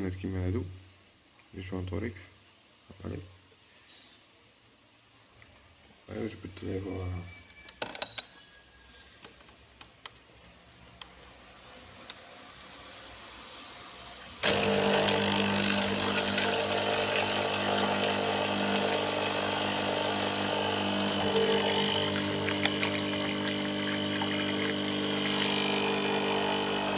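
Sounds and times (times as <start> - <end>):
coffee machine pump humming: 14.4 - 26.9.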